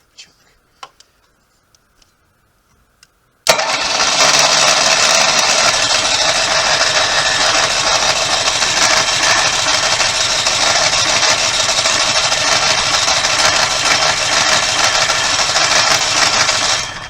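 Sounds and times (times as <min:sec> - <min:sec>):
generator starter cranking whir: 0:03.4 - 0:17.0.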